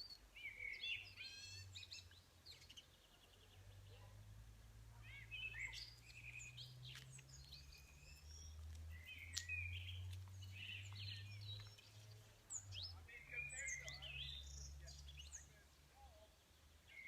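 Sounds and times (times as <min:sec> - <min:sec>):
songbirds chirping: 0:00.0 - 0:17.0.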